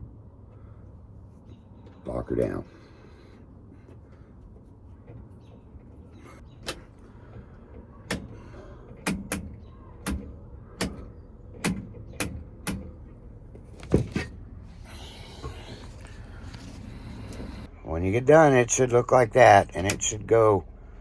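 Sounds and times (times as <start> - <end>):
rustling noise: 13.5 - 17.7.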